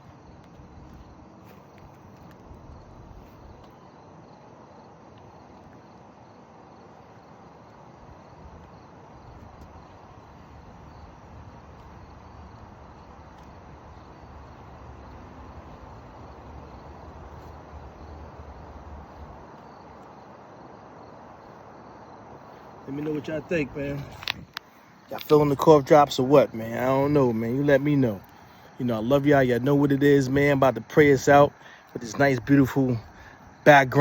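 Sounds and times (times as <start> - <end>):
insects chirping: 0.0 - 34.0
low rumble: 2.3 - 3.7.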